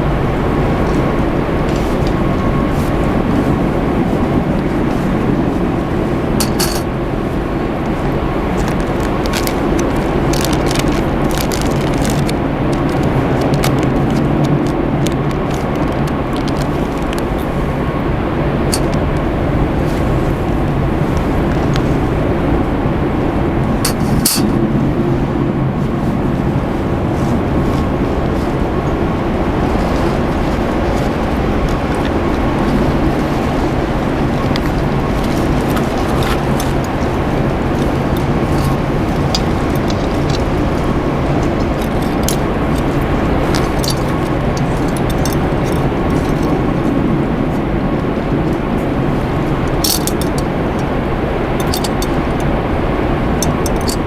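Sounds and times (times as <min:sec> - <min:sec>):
low hum: 0:00.0 - 0:25.6
steady rushing roar: 0:00.0 - 0:54.0.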